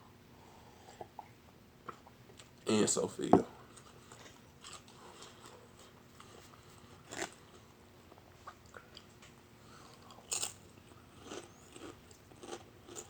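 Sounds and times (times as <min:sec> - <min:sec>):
chewing: 0:03.7 - 0:13.0.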